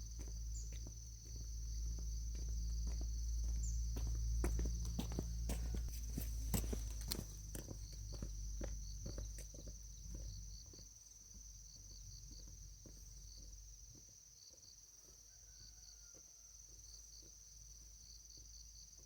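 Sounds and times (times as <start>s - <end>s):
insect chorus buzzing and chirping: 0.0s - 19.0s.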